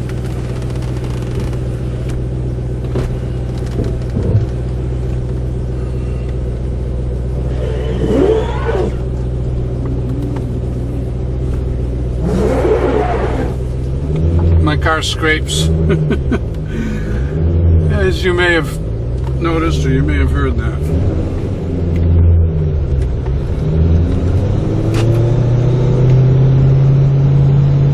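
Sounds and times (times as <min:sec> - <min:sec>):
car scraping: 0:00.0 - 0:22.3
car engine and road noise: 0:00.0 - 0:27.9.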